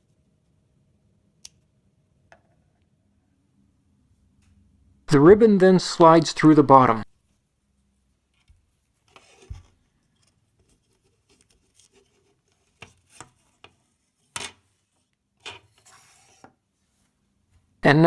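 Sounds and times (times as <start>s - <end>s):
faint plastic clicks and rubs: 8.3s - 17.1s.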